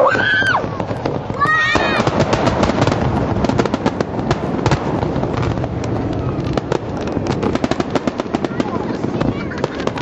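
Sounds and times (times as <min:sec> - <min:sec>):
fireworks crackling pops: 0:00.0 - 0:10.0
rumble of firework bursts: 0:00.0 - 0:10.0.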